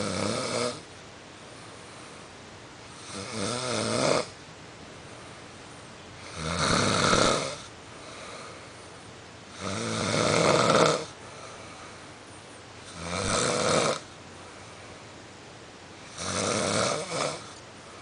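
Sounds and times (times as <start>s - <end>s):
man snoring loudly: 0.0s - 0.9s, 3.0s - 4.3s, 6.2s - 8.4s, 9.5s - 11.2s, 12.9s - 14.1s, 16.1s - 17.6s
quiet breaths: 0.0s - 3.5s, 4.2s - 18.0s.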